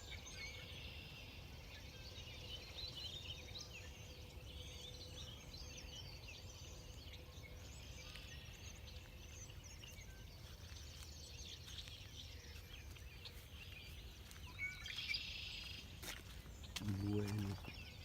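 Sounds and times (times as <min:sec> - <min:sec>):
small birds chirping: 0:00.0 - 0:18.0.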